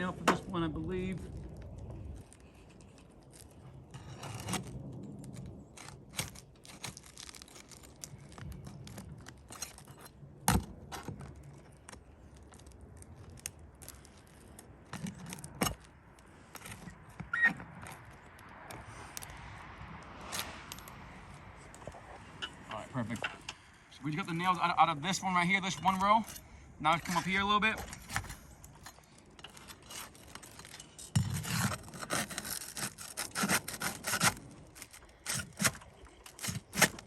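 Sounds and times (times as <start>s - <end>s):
metal tool scraping shingles: 2.9s - 10.2s, 25.3s - 37.0s.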